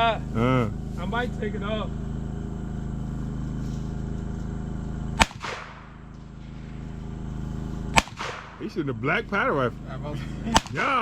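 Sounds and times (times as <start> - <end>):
steady low hum: 0.0 - 11.0
handgun shot: 5.2 - 6.0, 7.9 - 8.6, 10.5 - 11.0.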